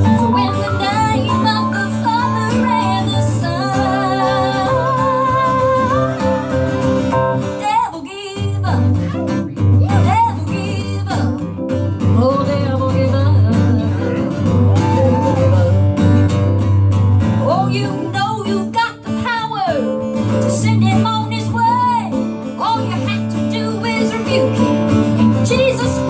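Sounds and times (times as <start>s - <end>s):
woman singing gospel: 0.0s - 11.4s, 12.1s - 15.9s, 20.5s - 26.0s
guitar played with a pick: 0.0s - 26.0s.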